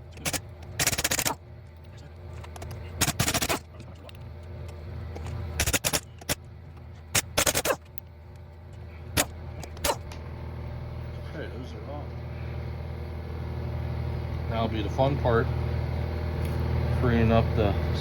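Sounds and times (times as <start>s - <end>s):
steady low hum: 0.0s - 18.0s
impact wrench hammering: 0.1s - 1.4s, 2.5s - 3.7s, 5.6s - 6.4s, 7.1s - 8.0s, 9.1s - 10.1s.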